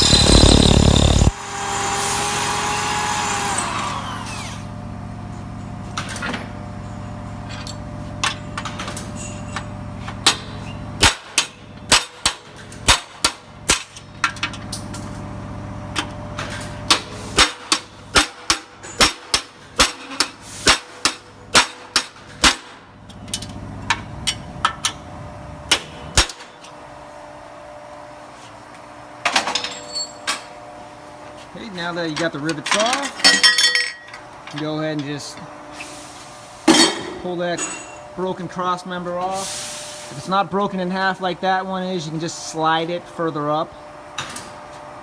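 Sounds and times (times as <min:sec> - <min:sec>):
steady low hum: 0:00.0 - 0:01.4.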